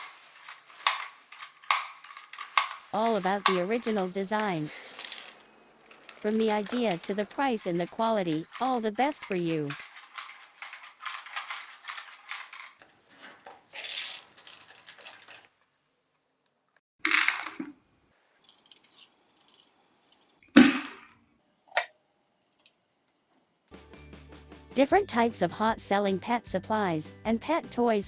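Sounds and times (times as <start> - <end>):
hard objects clicking and clattering: 0.0 - 15.6, 17.0 - 17.8, 18.4 - 21.0.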